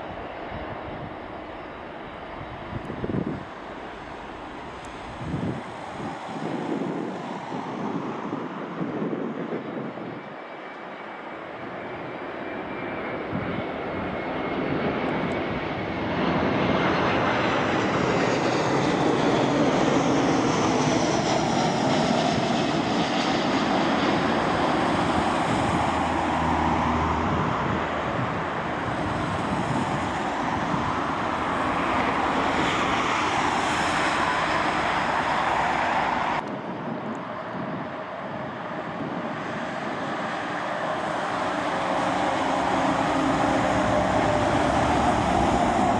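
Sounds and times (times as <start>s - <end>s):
jet engines passing by: 0.0s - 45.9s
whining fan tones: 18.2s - 45.9s.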